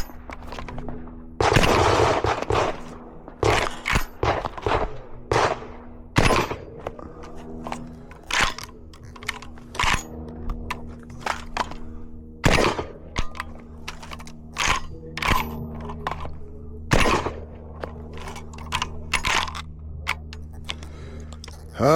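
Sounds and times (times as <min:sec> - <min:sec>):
gunshots with echo: 0:01.4 - 0:06.8.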